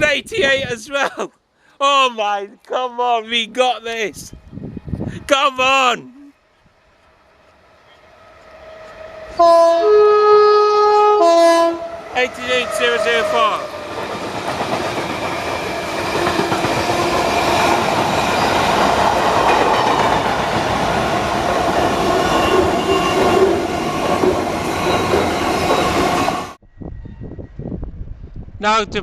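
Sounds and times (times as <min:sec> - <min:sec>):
train wheels clattering over rails: 0:13.7 - 0:26.5.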